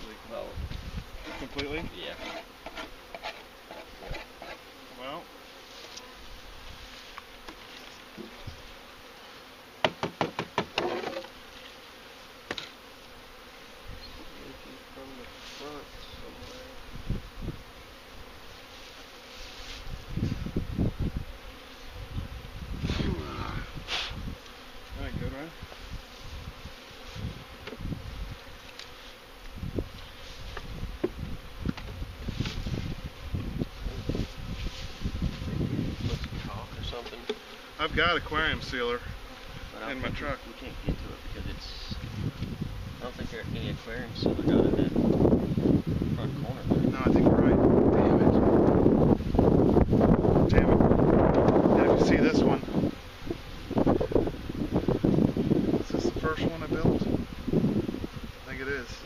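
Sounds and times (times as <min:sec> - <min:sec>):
honeybees buzzing: 0:00.0 - 0:59.0
sharp knocks: 0:09.8 - 0:11.3.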